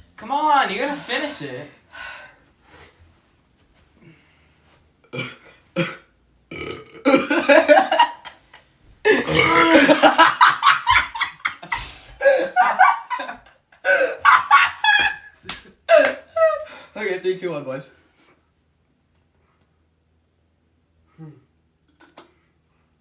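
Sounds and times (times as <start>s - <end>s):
person burping: 5.1s - 8.2s, 9.1s - 10.3s.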